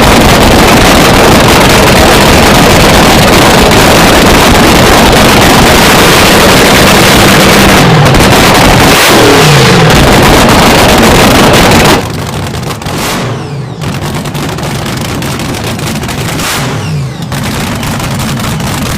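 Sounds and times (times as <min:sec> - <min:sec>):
dragster engine crackling: 0:00.0 - 0:18.9.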